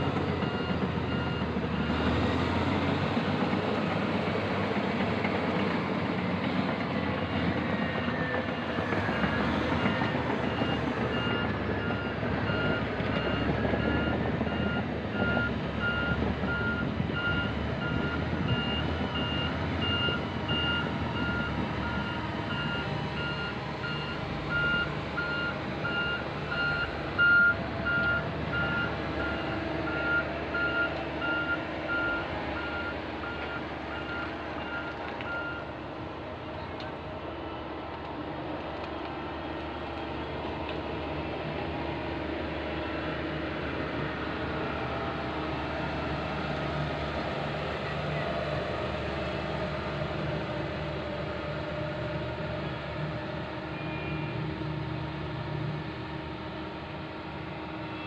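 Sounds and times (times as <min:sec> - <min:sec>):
reversing alarm beeping: 0:00.0 - 0:02.2, 0:07.8 - 0:35.7
diesel engine under load: 0:00.0 - 0:58.0.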